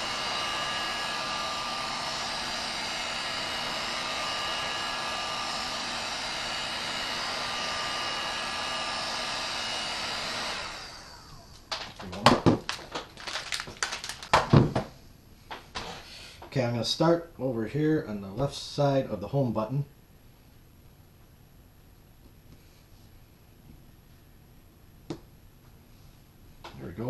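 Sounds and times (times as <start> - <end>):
heat gun blowing with whine: 0.0 - 14.3.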